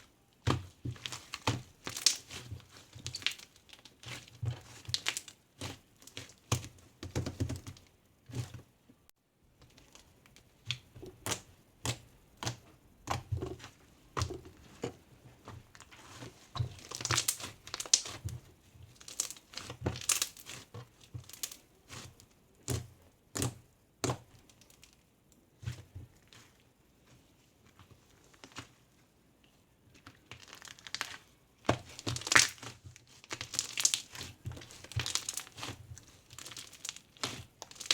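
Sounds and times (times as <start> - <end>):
crinkling and clicking: 29.4 - 37.9.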